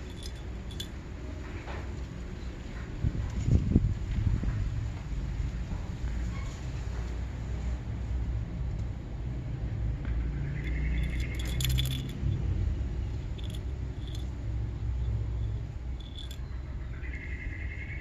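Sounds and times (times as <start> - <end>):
low rumble of handling noise: 0.0 - 1.9, 10.5 - 16.9
sharp metallic clicks: 10.6 - 12.3.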